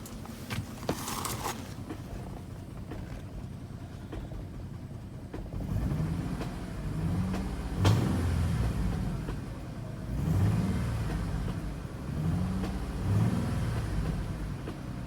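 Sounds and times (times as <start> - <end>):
engine running and revving: 5.5 - 15.0.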